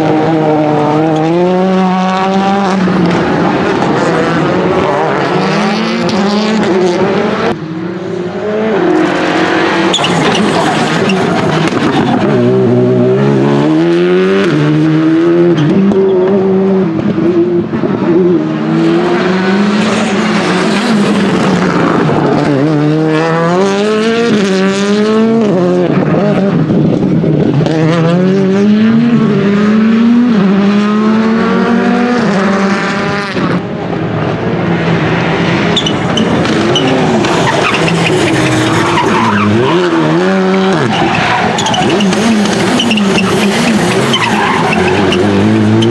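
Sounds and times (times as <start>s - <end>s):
rally car engine revving: 0.0s - 45.9s
tyres skidding: 0.1s - 16.4s, 18.5s - 23.1s, 34.9s - 45.9s.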